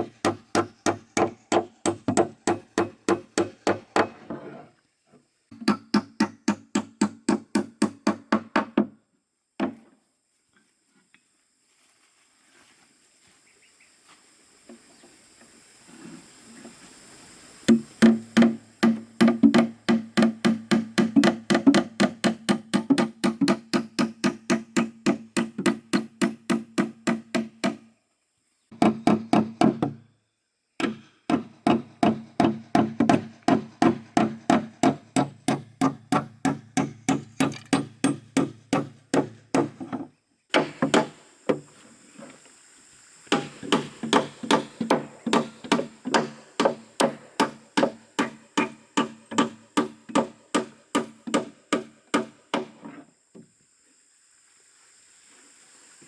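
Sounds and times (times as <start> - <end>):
hammering on wood: 0.0 - 4.2, 5.5 - 9.0, 17.7 - 27.9, 28.8 - 30.0, 30.8 - 41.7, 43.3 - 52.8.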